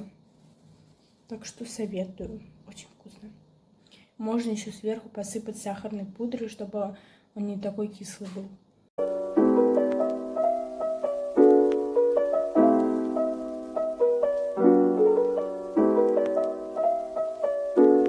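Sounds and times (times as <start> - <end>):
gentle piano music: 9.0 - 18.0.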